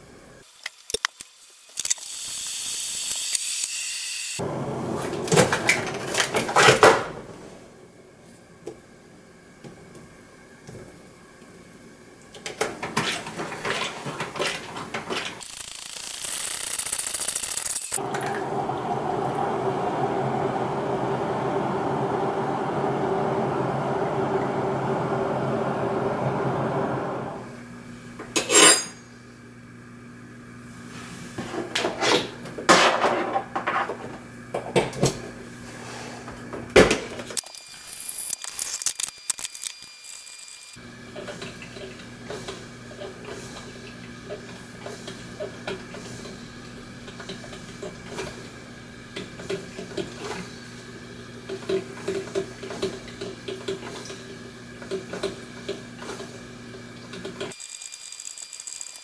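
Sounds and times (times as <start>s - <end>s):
steady appliance hum: 4.4s - 15.4s, 18.0s - 37.4s, 40.8s - 57.6s
coffee pot and dishes clinking: 28.4s - 29.0s.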